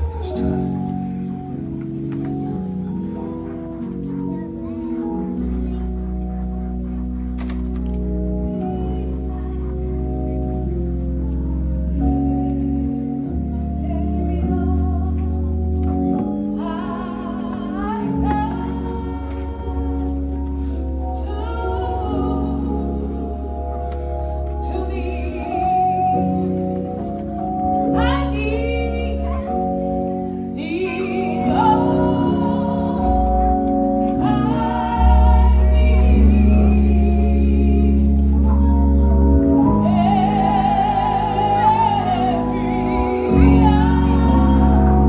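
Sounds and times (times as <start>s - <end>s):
held instrumental chords with bass: 0.0s - 45.0s
gospel singing with vibrato: 13.7s - 45.0s.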